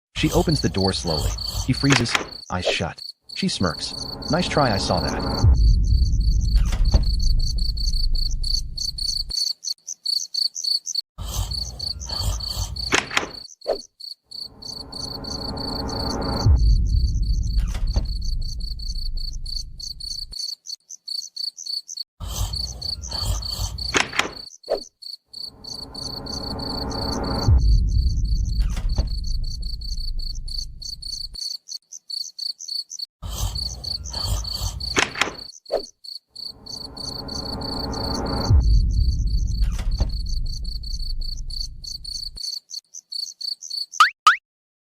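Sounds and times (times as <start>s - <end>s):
crickets chirping: 0.3s - 44.0s
low rumble: 3.7s - 9.3s, 14.6s - 20.1s, 25.6s - 31.2s, 36.6s - 42.4s.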